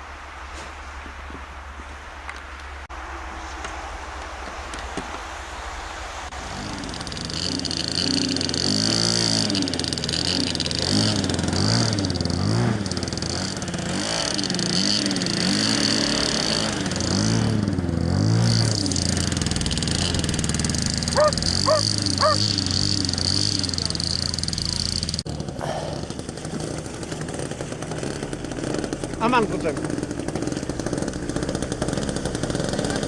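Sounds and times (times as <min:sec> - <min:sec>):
model plane motor and propeller: 0:06.3 - 0:33.0
short yelps: 0:21.2 - 0:22.4.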